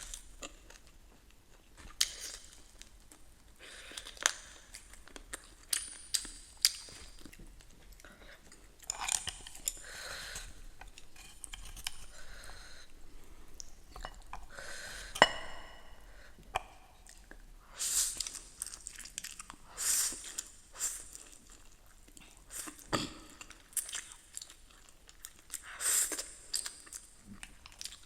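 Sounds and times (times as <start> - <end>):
person chewing crunchy food: 0.0 - 15.8, 18.2 - 20.6, 21.2 - 28.0.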